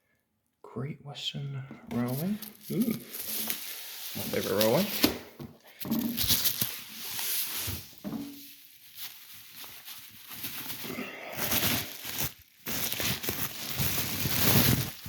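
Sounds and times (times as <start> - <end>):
wrapping paper tearing and crinkling: 1.9 - 5.2, 5.8 - 15.0.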